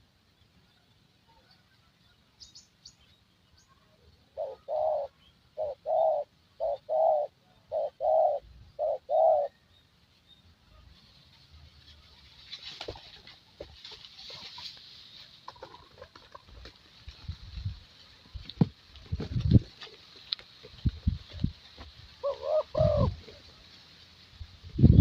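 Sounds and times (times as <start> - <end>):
dove cooing: 4.2 - 9.6, 22.2 - 23.5.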